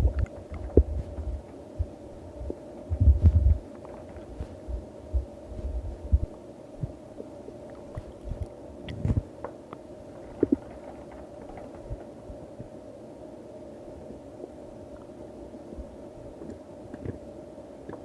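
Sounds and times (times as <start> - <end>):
stomach growling: 0.0 - 1.4, 7.8 - 9.3, 10.2 - 12.1, 16.4 - 17.3
steady hum: 0.0 - 18.0.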